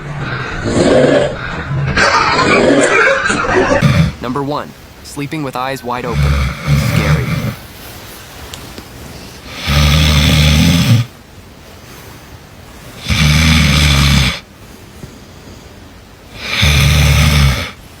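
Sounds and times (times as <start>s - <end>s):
person snoring loudly: 3.7s - 4.2s, 6.0s - 7.6s, 9.5s - 11.1s, 13.0s - 14.4s, 16.3s - 17.8s.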